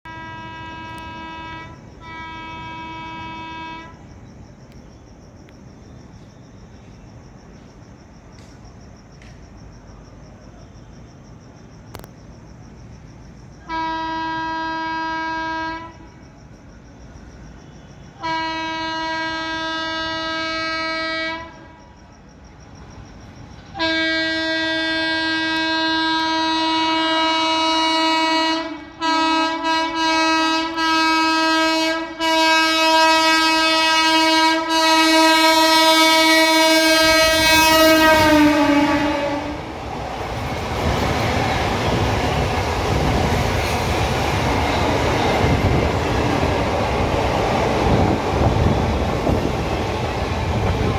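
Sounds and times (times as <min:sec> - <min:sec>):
locomotive horn blasts: 0:00.0 - 0:04.0, 0:13.7 - 0:16.0, 0:18.2 - 0:21.7, 0:23.8 - 0:39.6.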